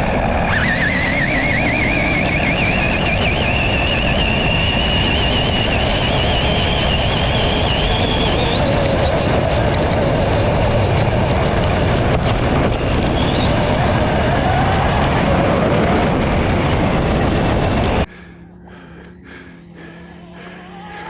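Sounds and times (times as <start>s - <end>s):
wind and tyre noise: 0.0s - 21.0s
electric motor whining: 17.8s - 21.0s.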